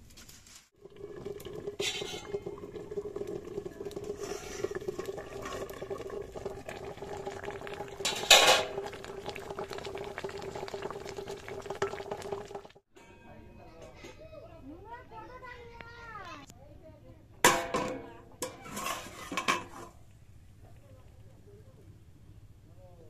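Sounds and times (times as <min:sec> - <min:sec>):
curry bubbling and sputtering: 0:00.8 - 0:12.8.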